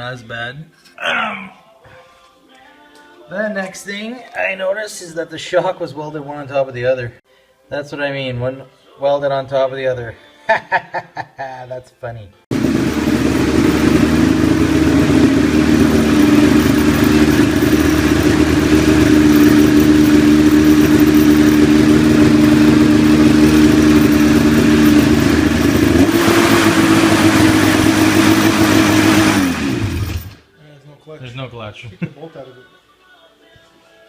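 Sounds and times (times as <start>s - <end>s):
two-stroke engine running: 12.5s - 30.4s.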